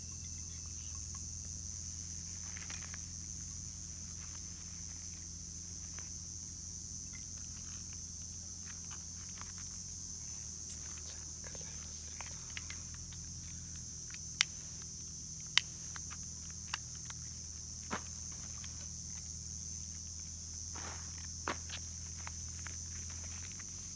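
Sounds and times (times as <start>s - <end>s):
high insect trill: 0.0s - 23.9s
twigs clicking while handled: 10.6s - 23.9s.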